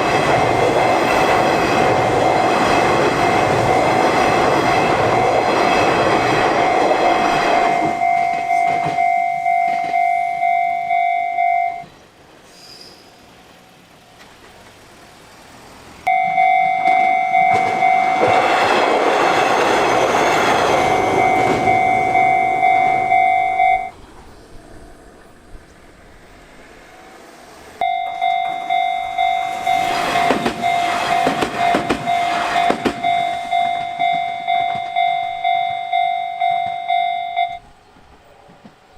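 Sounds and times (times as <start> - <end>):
railroad crossing alarm ringing: 0.0 - 12.0, 16.0 - 24.0, 27.8 - 37.8
train rumble and wheel clatter: 0.0 - 38.9.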